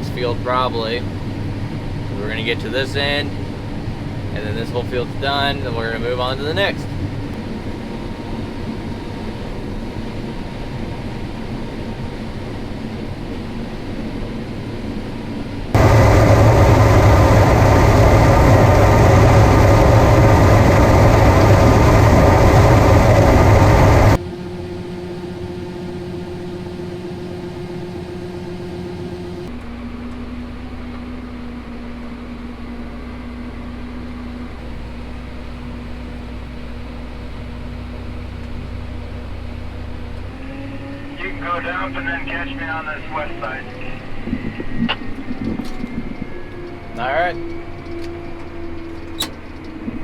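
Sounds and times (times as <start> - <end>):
combine engine and machinery hum: 0.0 - 50.0
loud full machine noise: 15.7 - 31.8, 34.5 - 41.6.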